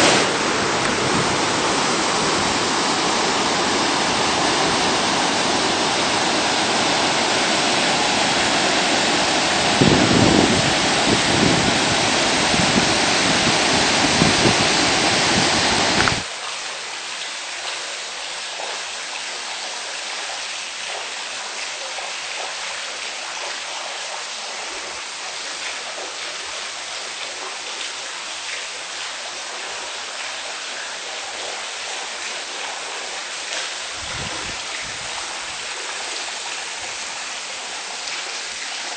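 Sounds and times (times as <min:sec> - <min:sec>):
waterfall rushing: 0:00.0 - 0:16.3
stream flowing: 0:00.0 - 0:38.9.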